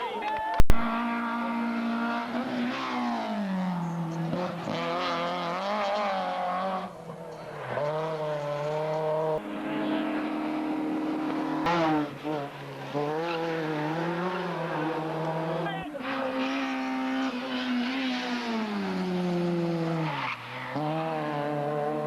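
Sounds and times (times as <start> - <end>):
race car engine revving: 0.7 - 22.0.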